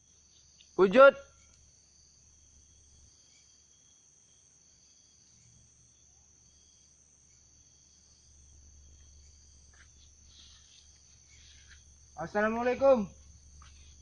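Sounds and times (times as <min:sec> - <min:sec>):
crickets and insects trilling: 0:00.0 - 0:14.0
faint rustles: 0:08.9 - 0:12.2, 0:13.1 - 0:14.0.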